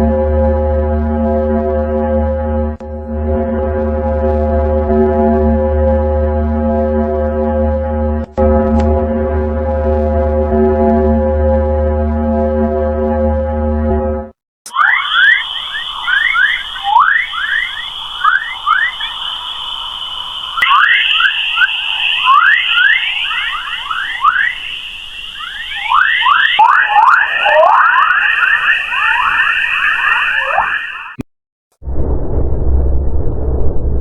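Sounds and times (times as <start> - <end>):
quick falling whistles: 14.7 - 31.2
steady high tone: 14.7 - 31.2.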